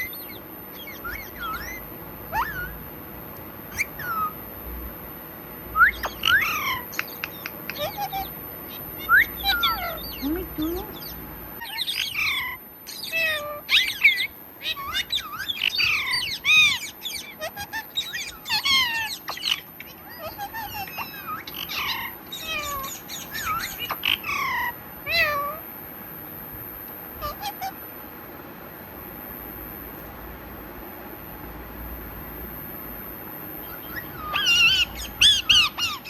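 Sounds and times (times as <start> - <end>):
parrot squawking and meow-like calls: 0.0 - 2.9, 3.7 - 4.4, 5.8 - 25.7, 27.2 - 27.8, 33.6 - 36.0.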